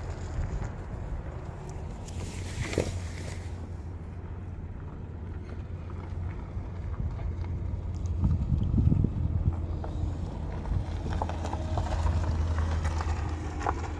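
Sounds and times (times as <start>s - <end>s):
brief rustle: 1.5s - 3.7s
wind buffeting microphone: 6.2s - 13.9s.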